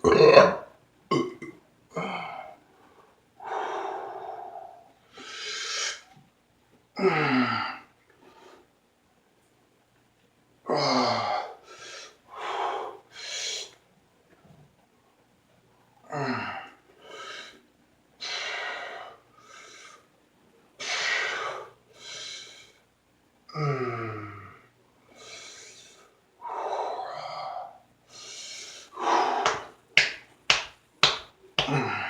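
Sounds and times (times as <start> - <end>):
man breathing hard: 2.0 - 6.0, 11.6 - 13.8, 18.2 - 20.1, 25.1 - 30.2, 31.6 - 32.0.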